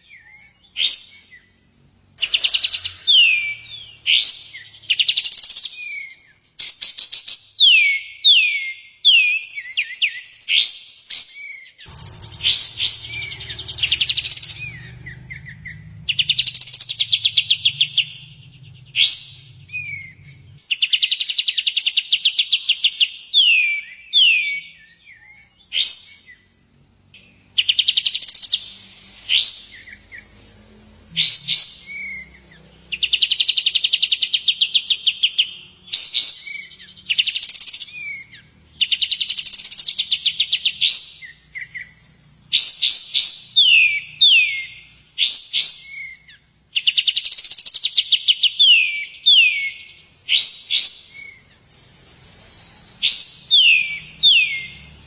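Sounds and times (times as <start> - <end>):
down-slurred bird whistles: 0.0 - 1.6, 2.2 - 26.4, 27.6 - 54.9
songbird trilling: 2.2 - 6.6, 11.4 - 26.4, 27.2 - 55.0
short bird chips: 2.2 - 7.2.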